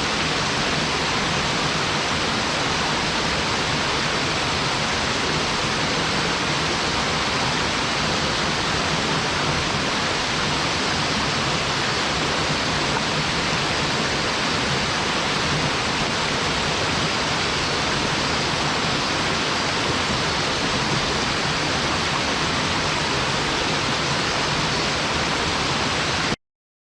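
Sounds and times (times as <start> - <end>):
waterfall rushing: 0.0 - 26.4.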